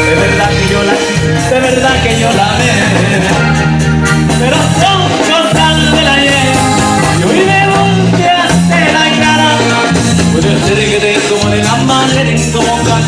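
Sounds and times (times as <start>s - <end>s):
band playing latin music: 0.0s - 13.0s.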